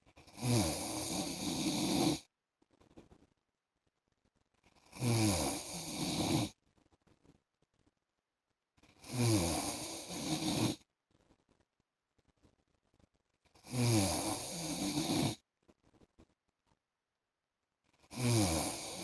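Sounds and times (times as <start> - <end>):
man snoring: 0.2 - 2.2, 4.9 - 6.5, 9.0 - 10.8, 13.6 - 15.4, 18.1 - 19.0.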